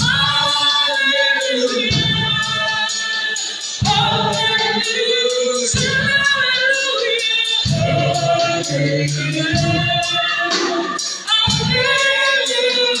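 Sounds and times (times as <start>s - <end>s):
band playing steady beat: 0.0s - 13.0s
congregation singing gospel chorus: 0.0s - 13.0s.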